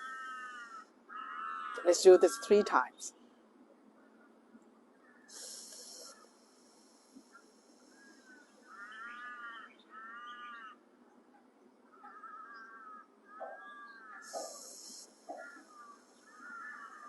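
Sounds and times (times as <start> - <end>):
birds calling: 0.0 - 3.0, 5.0 - 10.8, 11.9 - 17.0
hiss sucked through teeth: 5.3 - 8.4, 14.2 - 17.0.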